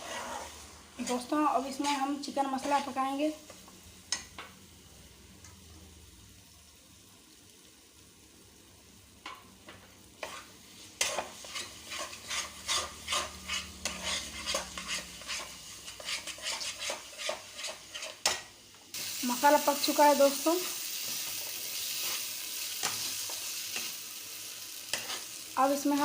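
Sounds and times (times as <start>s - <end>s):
spatula scraping a pan: 0.0s - 4.2s, 9.7s - 18.5s, 20.6s - 24.0s, 24.7s - 25.4s.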